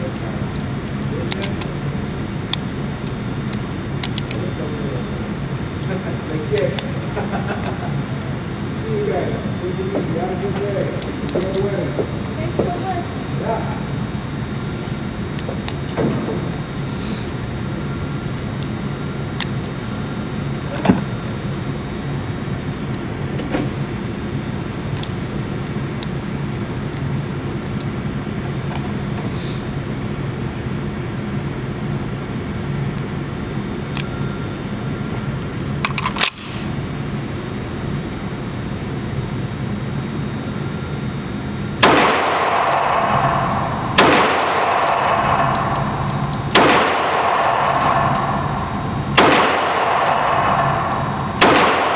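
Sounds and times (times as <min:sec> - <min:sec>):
pistol shots: 0:41.8 - 0:51.9.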